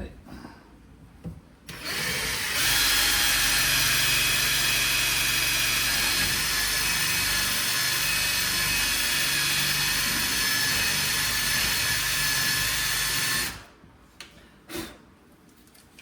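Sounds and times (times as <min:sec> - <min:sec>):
power drill drilling: 0:01.7 - 0:13.7.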